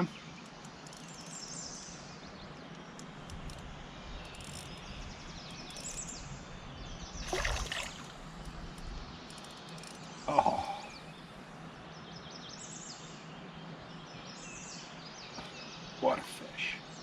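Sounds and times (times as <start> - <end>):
river water flowing: 7.1 - 12.0
water splash: 7.2 - 8.3.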